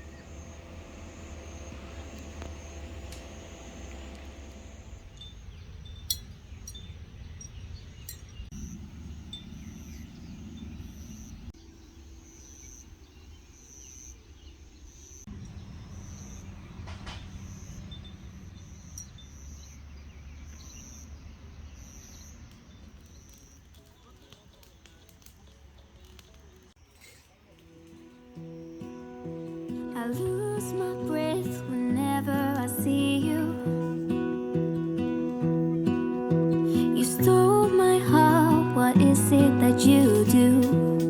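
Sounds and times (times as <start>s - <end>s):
insects chirping in pulses: 0.0s - 6.1s, 6.7s - 23.7s
low steady rumble: 0.0s - 11.6s.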